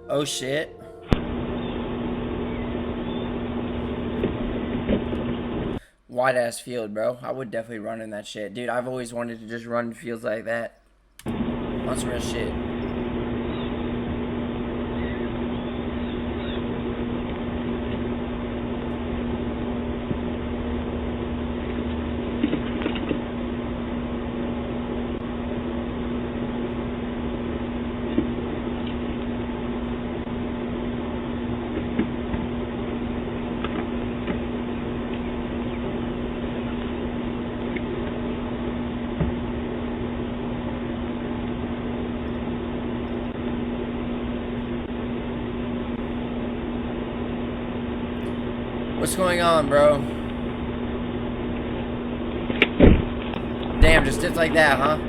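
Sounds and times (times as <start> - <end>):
constant low tone: 0.0 - 5.8, 49.0 - 55.0
microphone hum and hiss: 11.2 - 55.0.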